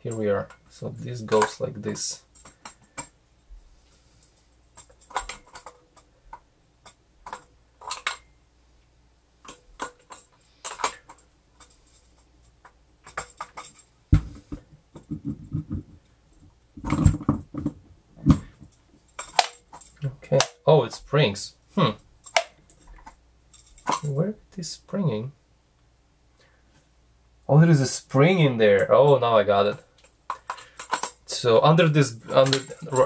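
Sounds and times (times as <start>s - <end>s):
small metal parts clicking: 0.1s - 3.2s, 4.2s - 8.3s, 9.4s - 13.9s, 18.2s - 21.1s, 22.2s - 24.2s, 28.8s - 33.0s.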